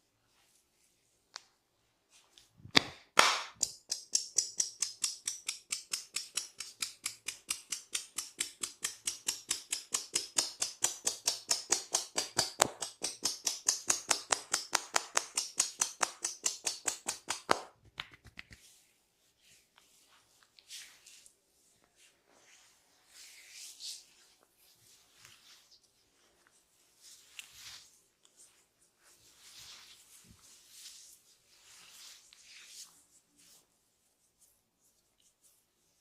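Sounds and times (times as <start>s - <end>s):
hands tapping on head: 2.8s - 18.6s.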